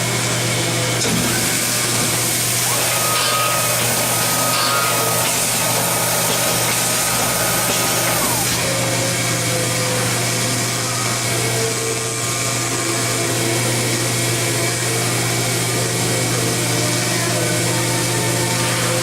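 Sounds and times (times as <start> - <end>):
machine humming with hiss: 0.0 - 19.0
short machine whines: 1.1 - 13.2.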